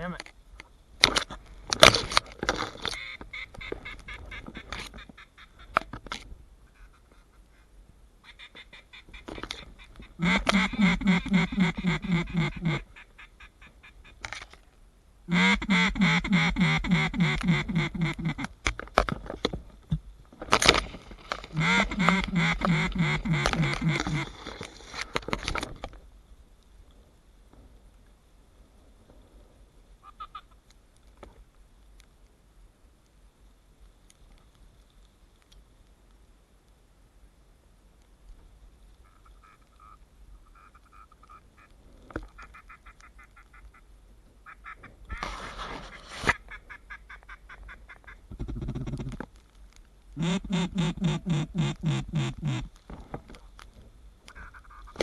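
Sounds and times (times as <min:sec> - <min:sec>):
duck call quacks: 0:06.7 - 0:14.2, 0:15.3 - 0:18.5, 0:21.5 - 0:24.4, 0:39.0 - 0:41.7, 0:42.4 - 0:45.2, 0:50.2 - 0:52.7, 0:54.3 - 0:55.0.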